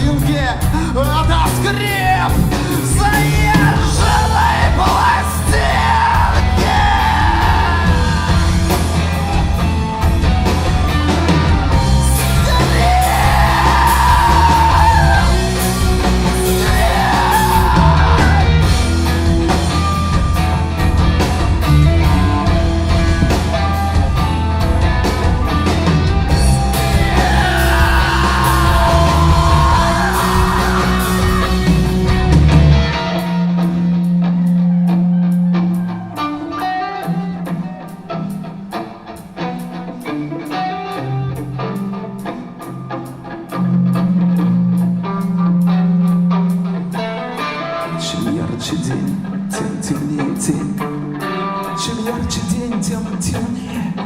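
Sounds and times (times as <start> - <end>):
wordless vocal lines: 0.0 - 8.8, 26.4 - 31.6, 51.8 - 54.0
live rock band playing: 0.0 - 54.0.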